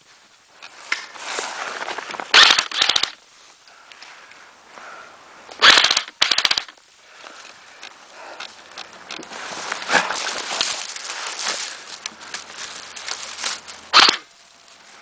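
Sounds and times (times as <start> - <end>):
airsoft gun firing bursts: 2.3 - 3.2, 5.6 - 6.8, 13.9 - 14.3.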